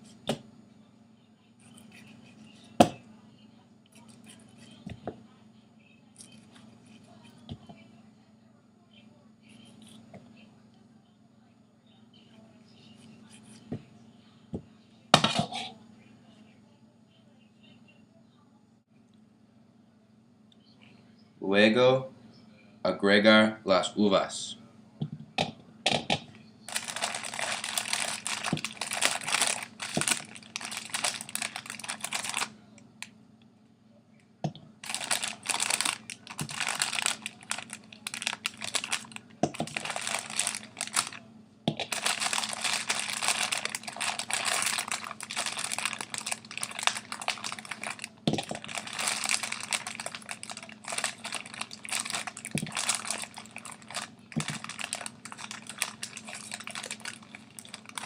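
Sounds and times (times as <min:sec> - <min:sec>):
grapes rustling and clicking: 0:26.7 - 0:32.5, 0:34.8 - 0:58.0.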